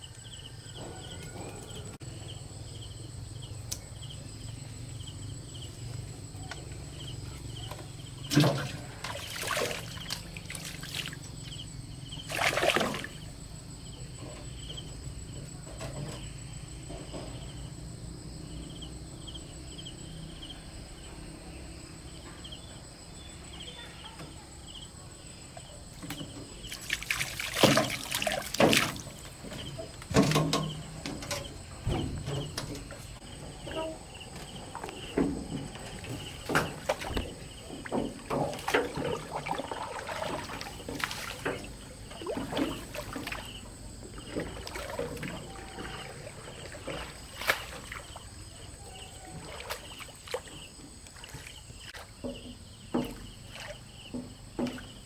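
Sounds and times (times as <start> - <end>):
insects chirping: 0.0 - 55.0
water splashing and pouring: 8.2 - 11.4, 12.2 - 13.3, 26.6 - 33.2, 34.5 - 52.1.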